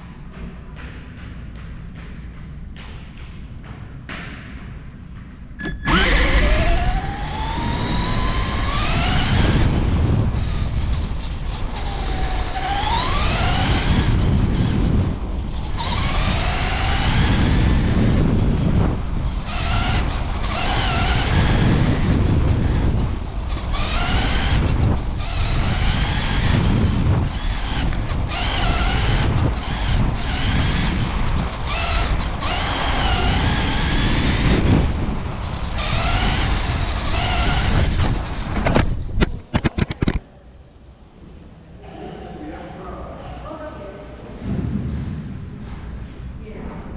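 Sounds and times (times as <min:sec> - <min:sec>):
rumble of wheels and wind: 0:00.0 - 0:46.9
rc car motor whining: 0:05.6 - 0:40.2.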